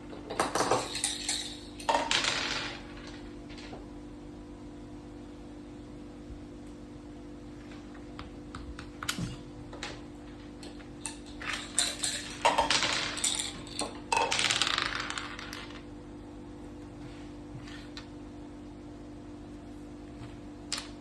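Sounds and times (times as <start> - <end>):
game pieces clacking: 10.6 - 15.8
dice rattling: 11.4 - 15.8.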